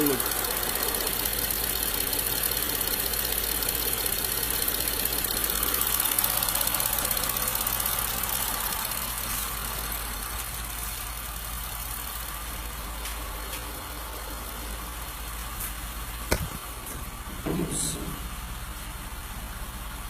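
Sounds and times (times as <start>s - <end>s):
fast even engine ticking: 0.0s - 12.8s
car engine idling: 0.0s - 20.0s.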